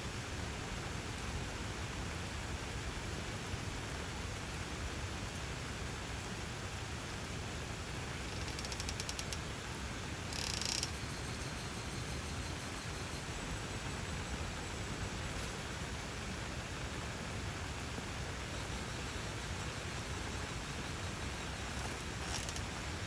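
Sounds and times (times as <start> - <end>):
rain hissing: 0.7 - 23.0
faint clicks: 8.3 - 9.5, 10.2 - 11.7, 21.4 - 22.8.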